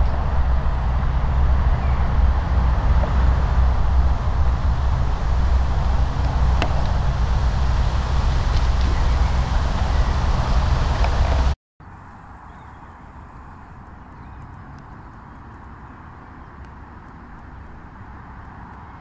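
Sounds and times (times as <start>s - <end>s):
mobility scooter motor hum: 0.0s - 11.5s.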